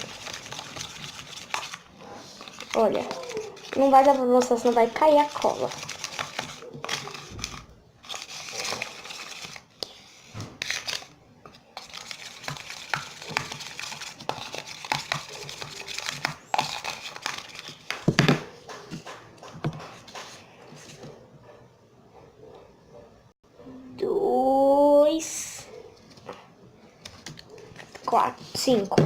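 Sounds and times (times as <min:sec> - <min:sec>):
utensil stirring in a bowl: 0:00.0 - 0:18.0.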